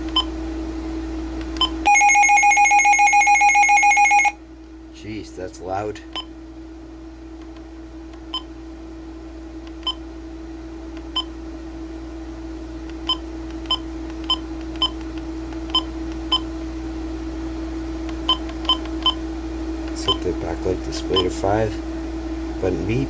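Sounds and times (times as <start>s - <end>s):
steady low hum: 0.0s - 23.0s
keypad beeping: 13.0s - 15.0s, 18.3s - 19.2s.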